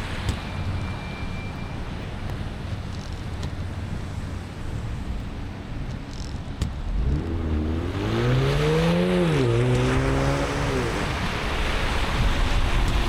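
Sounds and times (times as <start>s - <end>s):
car engine accelerating: 6.8s - 12.3s
tyres hissing on wet road: 8.0s - 13.0s.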